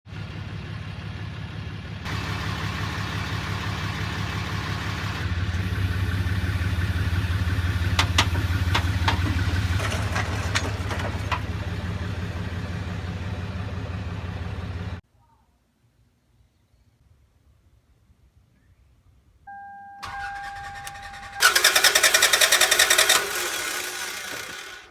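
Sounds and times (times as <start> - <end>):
car engine cranking on starter: 20.0 - 24.9.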